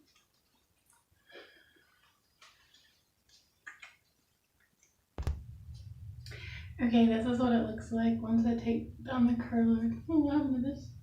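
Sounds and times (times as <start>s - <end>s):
low hum: 5.2s - 11.0s.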